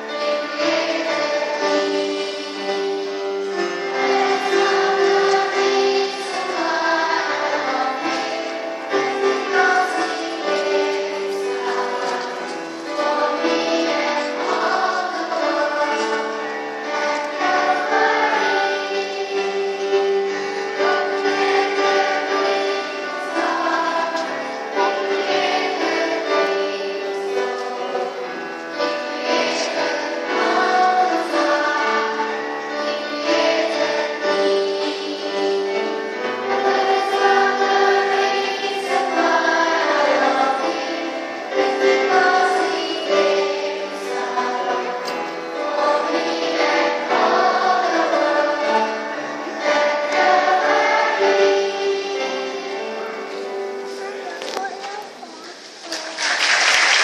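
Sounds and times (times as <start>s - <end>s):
choir singing sustained chords: 0.0s - 54.0s.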